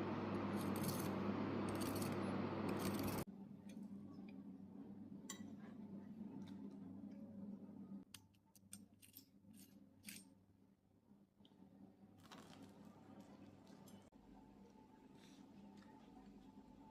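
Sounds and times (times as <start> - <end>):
low steady hum: 0.0 - 16.9
crunching of eating fried chicken: 12.2 - 14.0.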